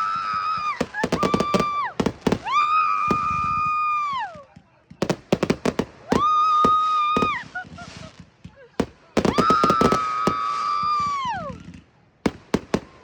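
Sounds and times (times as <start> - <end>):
firework whistles: 0.0 - 4.4, 6.0 - 11.9
firecrackers popping and crackling: 0.0 - 13.0.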